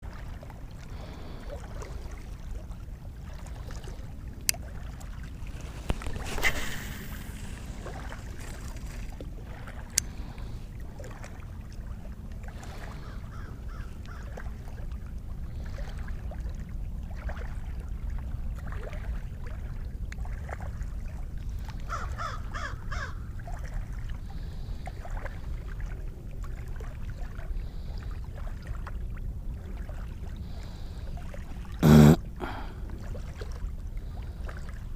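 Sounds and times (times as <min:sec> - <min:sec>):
brief rush of noise: 0:05.7 - 0:07.9
crow cawing: 0:21.9 - 0:23.2.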